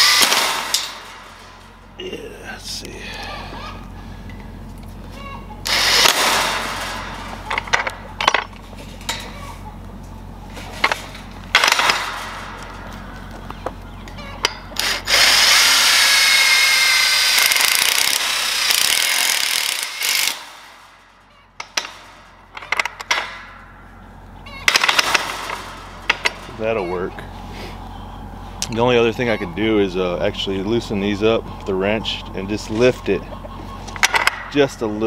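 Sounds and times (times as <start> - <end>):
power drill boring into metal: 0.0 - 0.9, 5.7 - 6.4, 14.8 - 20.5.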